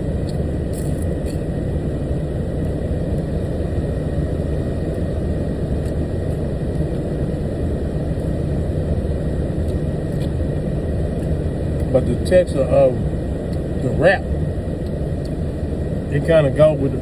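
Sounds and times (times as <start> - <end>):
faint steady whine: 0.0 - 17.0.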